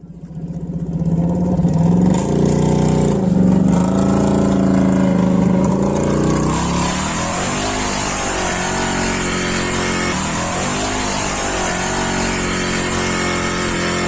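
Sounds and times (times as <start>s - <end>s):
buggy engine running: 0.0s - 14.0s.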